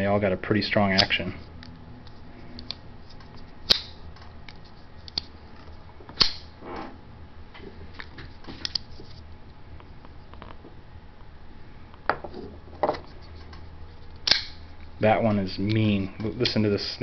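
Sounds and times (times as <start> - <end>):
knife blades snapping open: 14.3 - 14.6.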